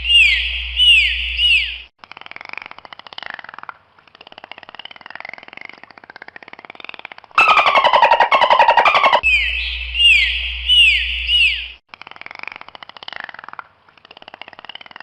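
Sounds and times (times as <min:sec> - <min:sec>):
dolphin click chatter: 0:02.6 - 0:09.2
dolphin whistles: 0:07.4 - 0:11.8
low steady hum: 0:08.8 - 0:11.8.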